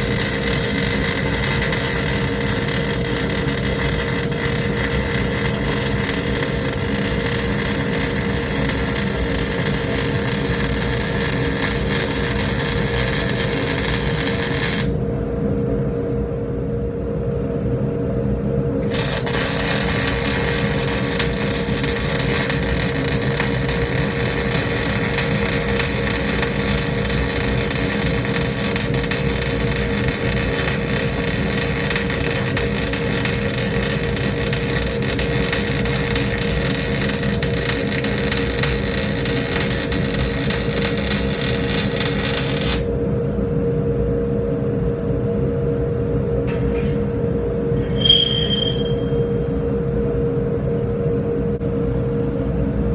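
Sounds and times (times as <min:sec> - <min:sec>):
arc welding crackle: 0:00.0 - 0:15.0, 0:18.8 - 0:42.9
steady hum: 0:00.0 - 0:52.9.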